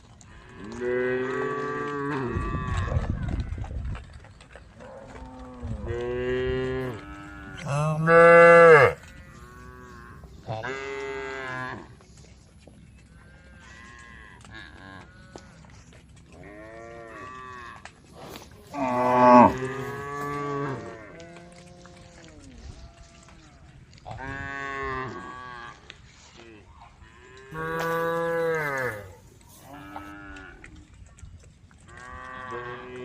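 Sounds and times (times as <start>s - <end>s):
cows mooing: 0.3s - 3.3s, 4.8s - 12.0s, 16.4s - 23.2s, 27.0s - 30.7s, 31.9s - 33.0s.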